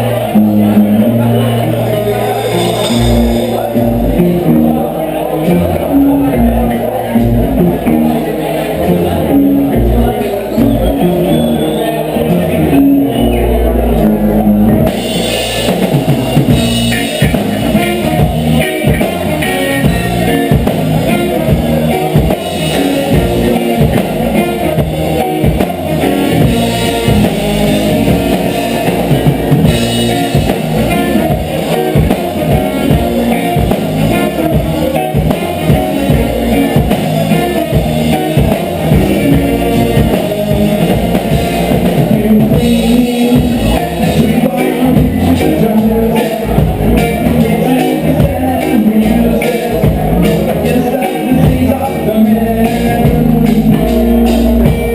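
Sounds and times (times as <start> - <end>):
reggae band playing: 0.0 - 54.9.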